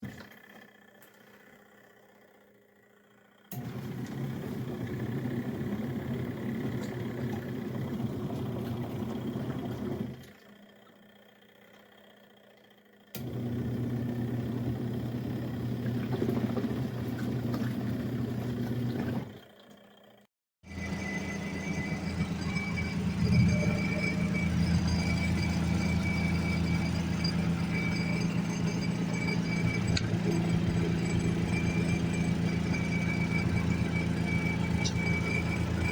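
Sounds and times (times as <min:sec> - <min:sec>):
washing machine motor humming: 0:00.0 - 0:35.9
faint high whine: 0:20.7 - 0:35.9.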